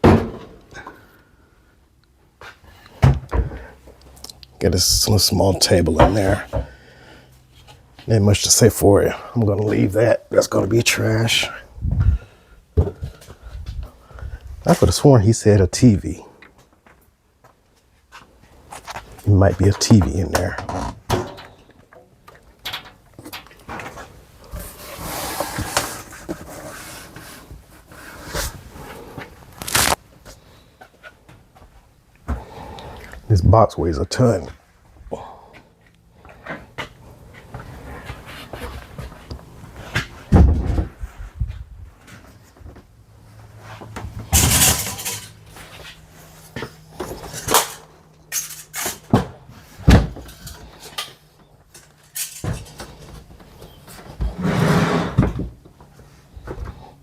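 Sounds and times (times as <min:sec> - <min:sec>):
boxes knocking and thudding: 0:00.0 - 0:00.6
boxes scraping: 0:24.5 - 0:30.0, 0:52.7 - 0:55.4.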